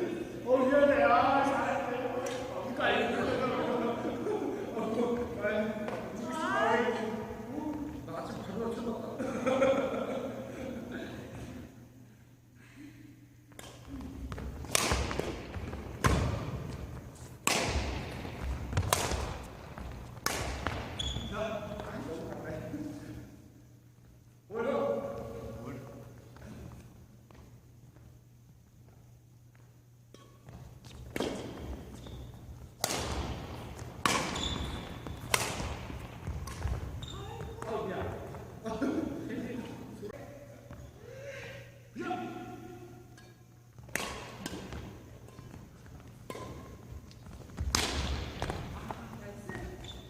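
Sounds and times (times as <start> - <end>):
rackets hitting shuttlecock: 13.5 - 21.0, 30.1 - 32.0, 32.6 - 37.8, 43.2 - 49.0.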